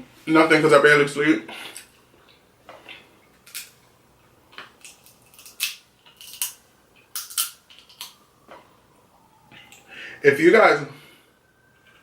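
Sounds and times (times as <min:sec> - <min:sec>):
crab shell cracking: 0:03.4 - 0:03.8, 0:04.5 - 0:08.2.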